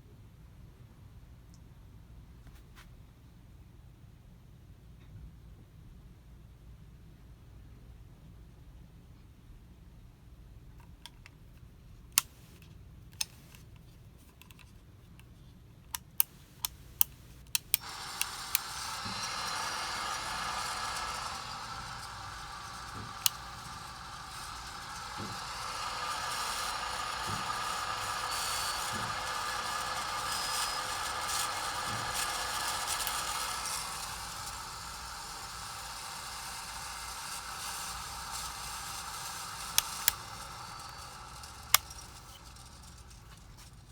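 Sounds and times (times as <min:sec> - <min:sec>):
ceiling fan whirring grind: 0:16.0 - 0:43.9
sharp clicks: 0:16.0 - 0:43.9.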